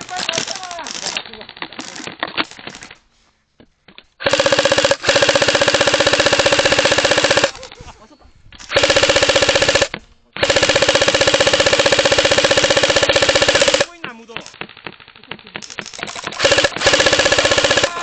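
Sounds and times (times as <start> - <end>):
airsoft gun full auto rattle: 4.2 - 7.7, 8.5 - 18.0.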